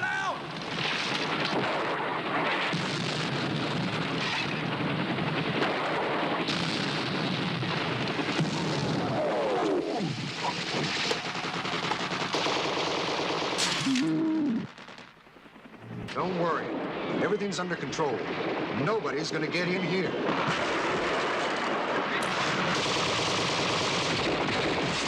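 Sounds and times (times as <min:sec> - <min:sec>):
machine-gun and rifle fire: 0:00.4 - 0:15.2, 0:20.2 - 0:25.0.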